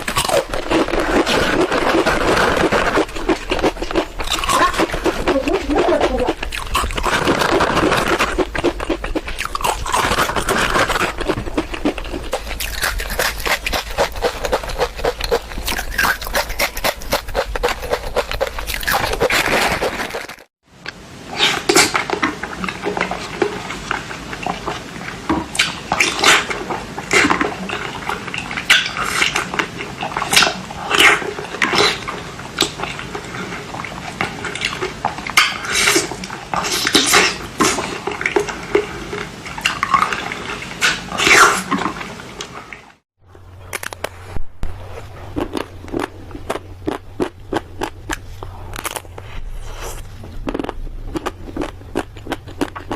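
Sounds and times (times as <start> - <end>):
crisp crunching of sweets: 0.0 - 20.5, 43.6 - 52.9.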